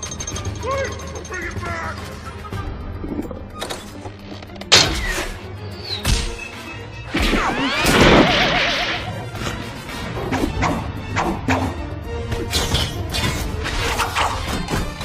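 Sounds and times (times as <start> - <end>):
orchestral film score: 0.0 - 15.0.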